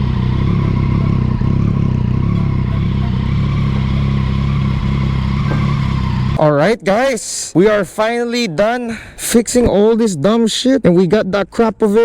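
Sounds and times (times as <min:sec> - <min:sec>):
motorcycle engine idling: 0:00.0 - 0:06.4.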